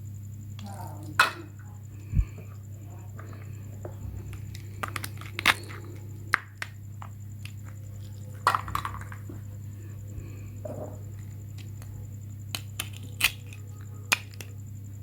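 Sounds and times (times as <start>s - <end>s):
steady low hum: 0.0s - 15.0s
clicks of small hard objects: 4.3s - 9.3s, 12.5s - 14.5s.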